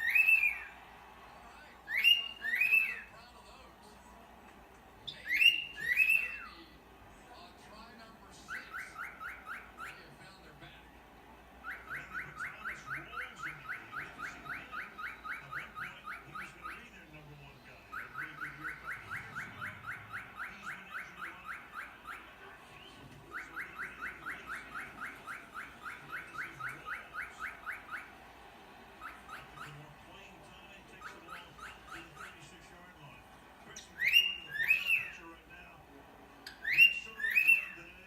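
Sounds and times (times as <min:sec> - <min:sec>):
cockatiel whistling: 0:00.0 - 0:00.8, 0:01.8 - 0:03.2, 0:05.1 - 0:06.7, 0:08.4 - 0:10.2, 0:11.6 - 0:16.9, 0:17.8 - 0:28.2, 0:28.9 - 0:30.0, 0:30.9 - 0:32.6, 0:33.7 - 0:35.2, 0:36.4 - 0:38.0.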